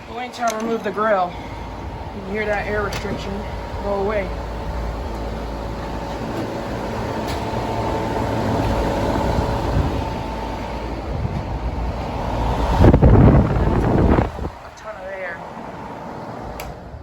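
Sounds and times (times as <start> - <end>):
fan blowing air: 0.0 - 17.0
fan motor hum: 0.0 - 17.0.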